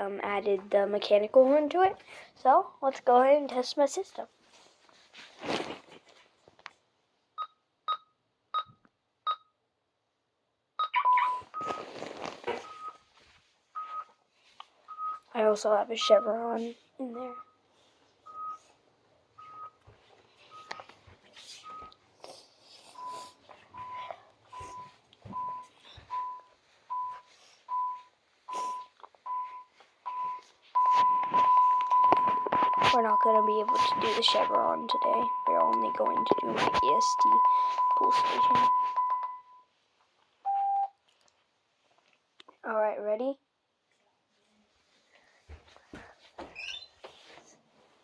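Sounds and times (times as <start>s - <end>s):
rustling handling noise: 4.2s - 6.8s, 11.4s - 15.1s, 19.5s - 39.2s
alarm keypad beeping: 23.8s - 39.6s.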